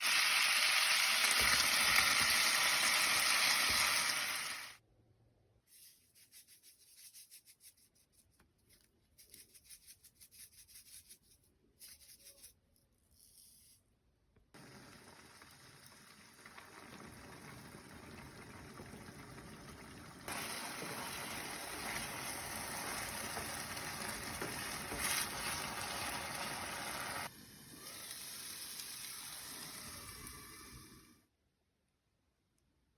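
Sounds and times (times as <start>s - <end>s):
food sizzling in a frying pan: 0.0s - 4.8s, 14.6s - 31.1s.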